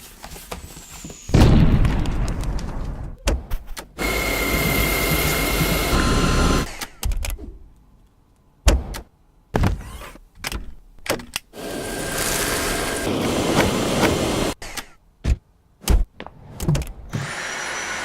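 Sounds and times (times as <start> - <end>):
vacuum cleaner motor whining: 4.0 - 6.7, 11.6 - 14.6, 17.2 - 18.0.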